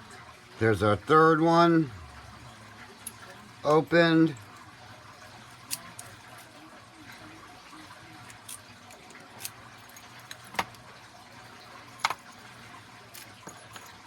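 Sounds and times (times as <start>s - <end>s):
faint steady hum: 0.0s - 14.0s
metallic clicks of lockpicking tools: 5.7s - 6.2s, 8.3s - 10.7s.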